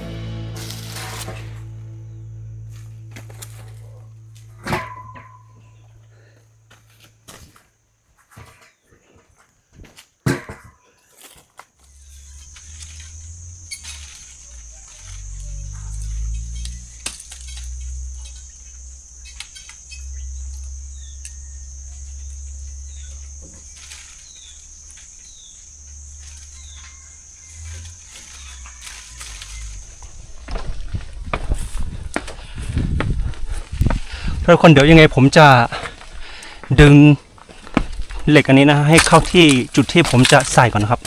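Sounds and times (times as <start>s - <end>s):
high-pitched insect drone: 0.0s - 7.1s, 11.9s - 31.1s
wind buffeting microphone: 30.0s - 35.1s.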